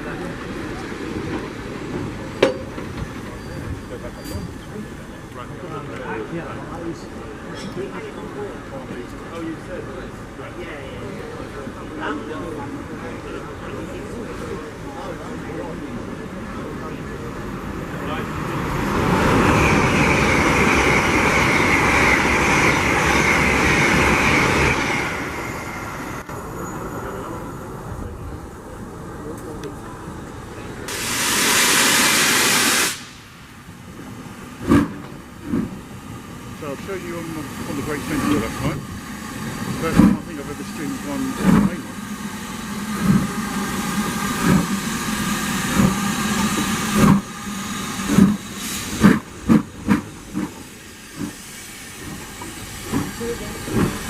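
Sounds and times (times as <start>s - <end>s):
train passing at speed: 0.0s - 54.0s
steam locomotive chuffing: 30.3s - 54.0s.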